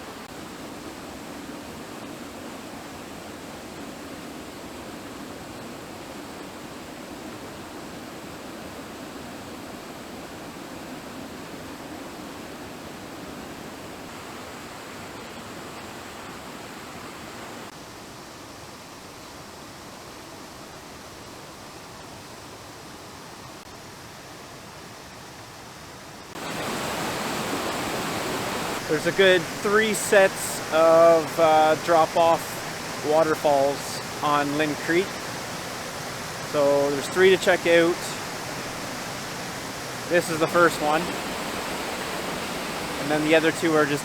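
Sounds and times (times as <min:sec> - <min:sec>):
water rushing over waterfall: 0:26.3 - 0:44.0.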